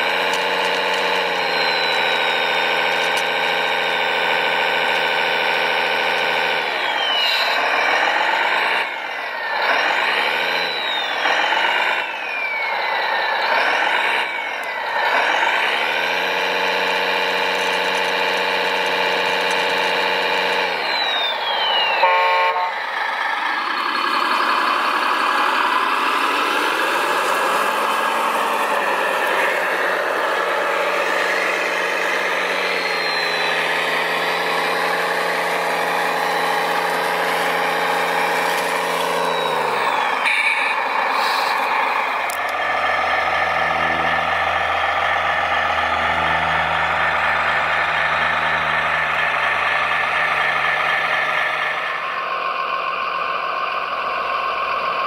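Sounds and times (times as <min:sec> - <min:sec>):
remote-control model motors whining: 0:00.0 - 0:22.8, 0:26.3 - 0:47.6
deeper hum: 0:37.3 - 0:52.2.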